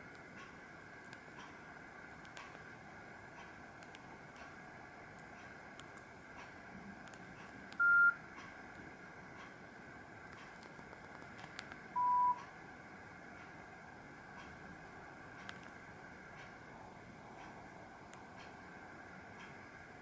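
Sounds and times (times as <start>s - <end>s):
mobile phone beeps: 7.8s - 8.2s, 12.0s - 12.4s.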